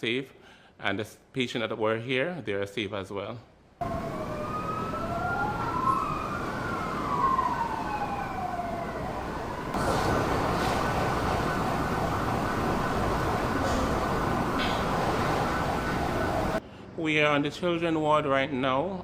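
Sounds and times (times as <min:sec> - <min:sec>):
emergency vehicle sirens wailing: 0:03.8 - 0:16.6.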